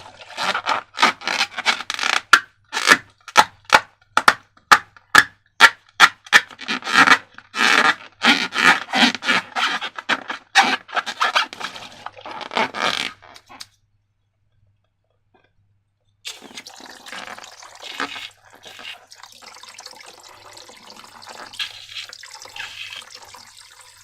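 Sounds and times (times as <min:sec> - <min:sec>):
rubbing and scraping strokes: 0:06.6 - 0:13.7, 0:17.8 - 0:19.1.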